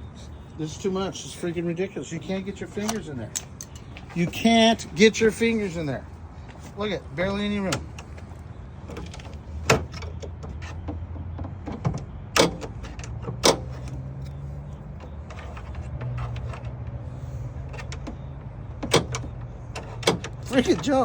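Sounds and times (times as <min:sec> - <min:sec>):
hood latch clicks and knocks: 0:02.4 - 0:04.7, 0:07.3 - 0:17.0, 0:17.6 - 0:21.0.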